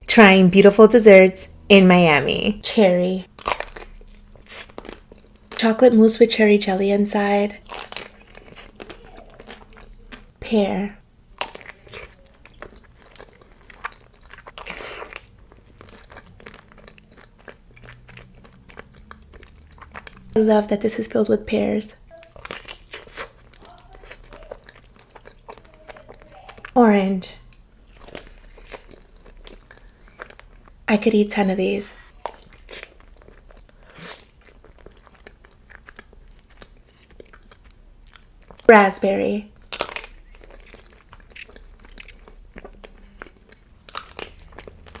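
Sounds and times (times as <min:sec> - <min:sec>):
biting and chewing: 0:03.3 - 0:05.8, 0:07.5 - 0:10.4, 0:11.2 - 0:20.4, 0:22.0 - 0:30.8, 0:32.0 - 0:38.7, 0:39.5 - 0:45.0.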